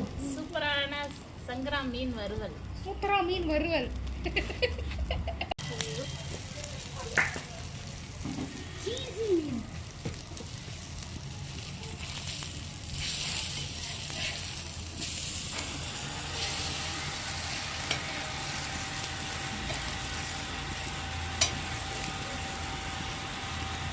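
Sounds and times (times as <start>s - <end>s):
fish sizzling in oil: 5.6s - 23.9s.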